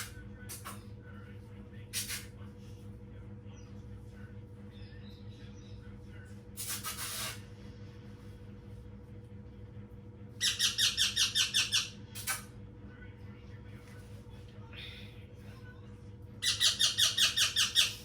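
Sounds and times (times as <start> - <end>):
parrot squawking: 10.4 - 12.4, 16.4 - 18.0.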